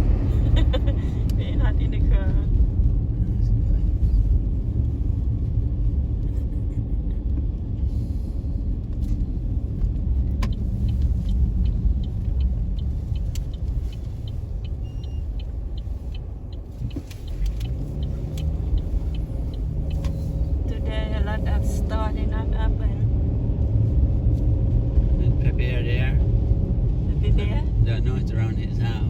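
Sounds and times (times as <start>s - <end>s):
car road and engine rumble: 0.0s - 29.0s
light ticks: 9.8s - 20.2s.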